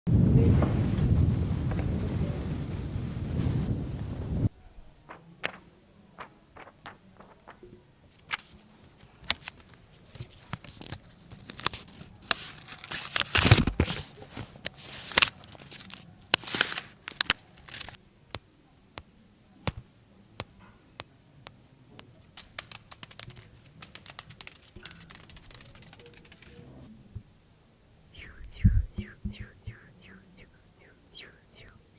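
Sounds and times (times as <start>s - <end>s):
crinkling and tearing crackles: 6.2s - 18.0s, 22.4s - 26.8s.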